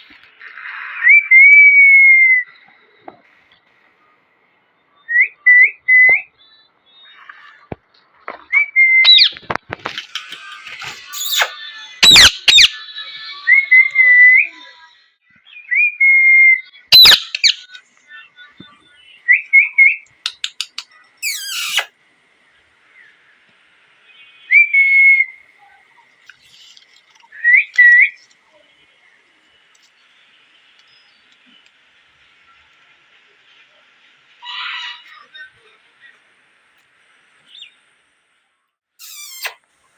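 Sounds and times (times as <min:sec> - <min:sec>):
parakeet harsh screeches: 0:10.6 - 0:12.8, 0:16.9 - 0:17.6, 0:20.4 - 0:21.9, 0:39.0 - 0:39.6
parakeet whistled notes: 0:11.1 - 0:12.8, 0:16.9 - 0:17.6, 0:21.2 - 0:21.9, 0:39.0 - 0:39.6.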